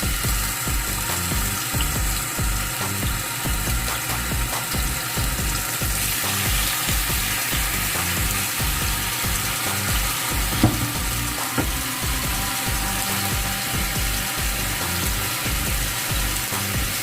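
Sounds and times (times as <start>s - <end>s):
chicken sizzling in pan: 0.0s - 17.0s
sharp knock: 10.6s - 11.8s.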